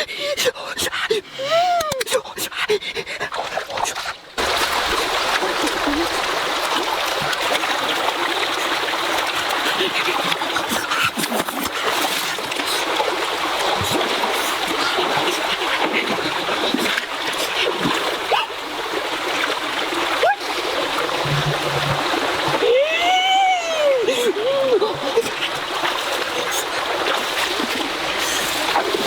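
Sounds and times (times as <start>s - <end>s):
running water splashing: 3.3s - 29.0s.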